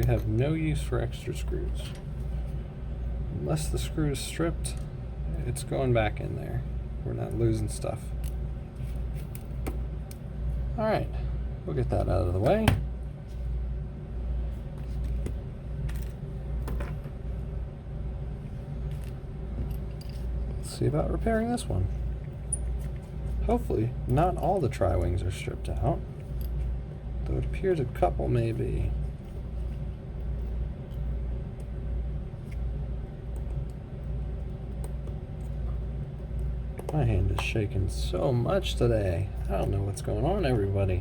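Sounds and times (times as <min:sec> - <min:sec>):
steady low hum: 0:00.0 - 0:41.0.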